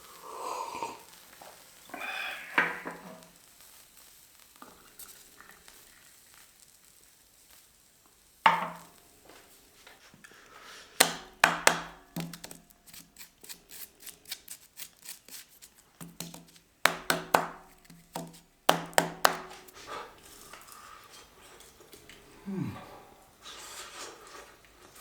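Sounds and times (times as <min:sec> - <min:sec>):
knife chopping on board: 0:11.0 - 0:13.9, 0:16.0 - 0:19.7.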